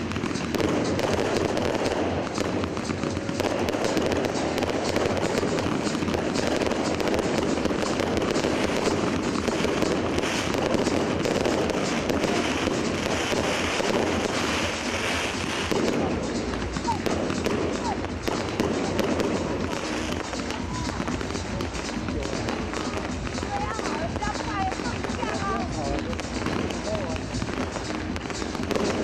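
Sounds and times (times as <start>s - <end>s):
fireworks crackling pops: 0.0s - 29.0s.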